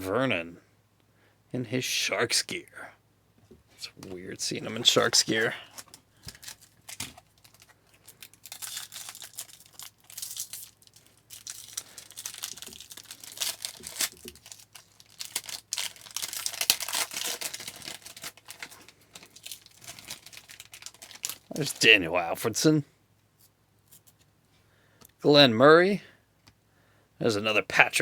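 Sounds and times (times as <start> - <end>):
wrapper crinkling and tearing: 4.7 - 22.0.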